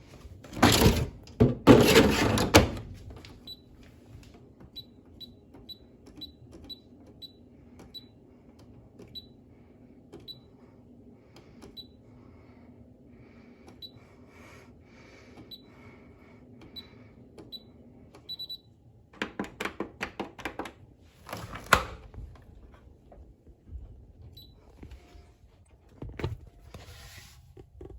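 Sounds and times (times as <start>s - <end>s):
loud knocks and clatter: 0.5s - 2.9s
low steady hum: 20.7s - 27.9s.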